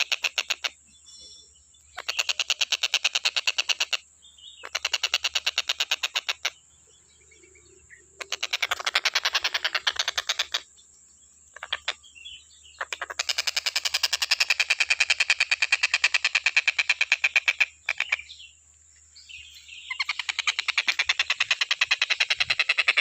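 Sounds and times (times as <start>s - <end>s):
kingfisher calling: 1.9s - 6.6s, 7.9s - 10.7s, 11.5s - 12.1s, 12.8s - 18.4s, 19.8s - 23.0s.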